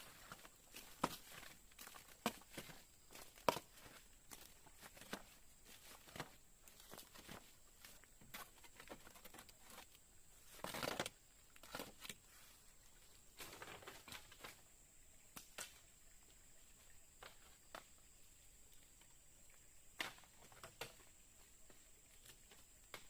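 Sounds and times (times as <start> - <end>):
faint rustling and crackling: 0.0 - 14.7.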